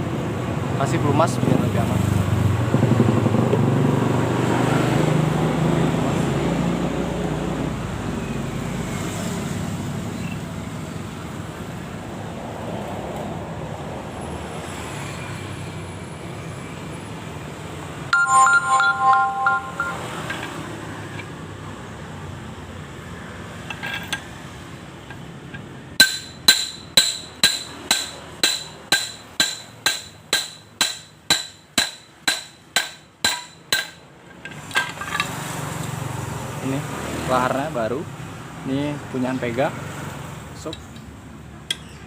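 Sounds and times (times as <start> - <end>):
metal-on-metal taps ringing: 18.2 - 21.3, 25.1 - 35.3, 41.7 - 42.0
metal parts rattling: 34.4 - 35.4.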